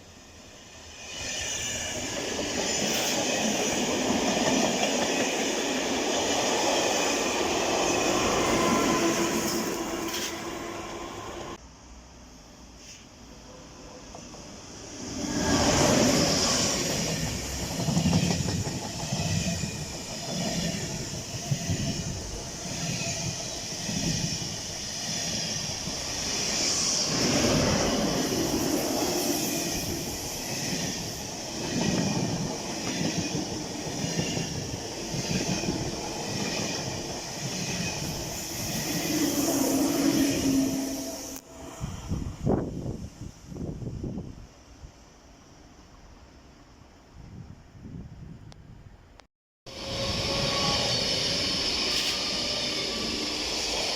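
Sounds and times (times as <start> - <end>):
rushing hiss of train: 0.0 - 46.2, 49.7 - 53.9
train wheels clacking: 16.2 - 27.6.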